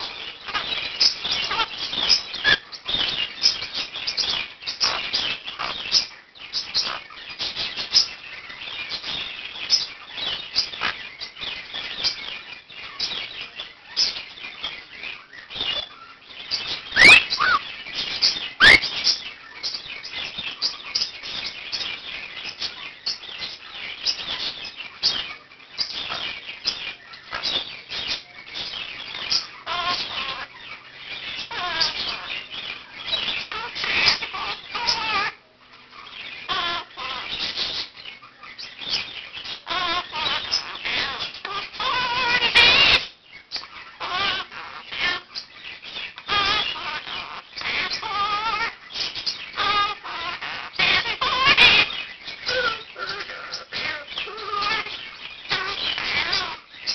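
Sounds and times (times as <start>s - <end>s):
birds chirping and chattering: 0.0s - 56.9s
shrill rising parakeet calls: 16.9s - 17.6s, 18.6s - 19.0s, 46.3s - 56.6s.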